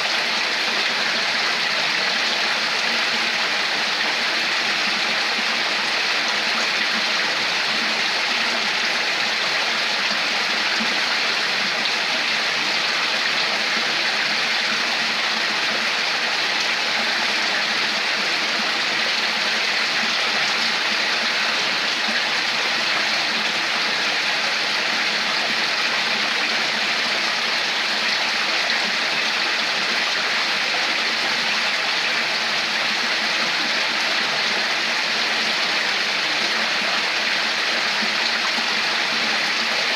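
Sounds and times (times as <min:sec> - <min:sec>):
running water babbling: 0:00.0 - 0:39.9.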